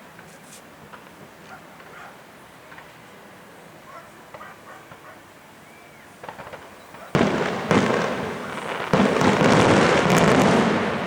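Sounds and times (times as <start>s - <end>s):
firework shells booming: 6.2s - 11.0s
rumbling echo: 7.2s - 11.0s.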